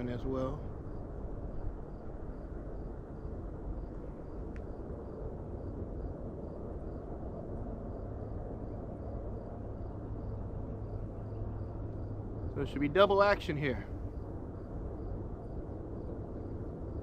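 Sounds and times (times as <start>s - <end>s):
freight train rumbling: 0.0s - 0.7s, 12.5s - 14.0s
low steady hum: 0.0s - 17.0s.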